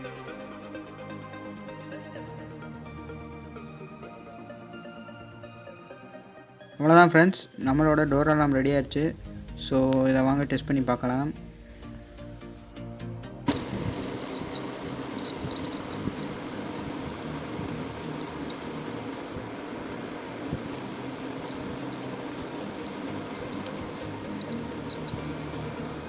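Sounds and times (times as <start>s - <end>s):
high-pitched alarm buzzer: 15.2s - 26.0s.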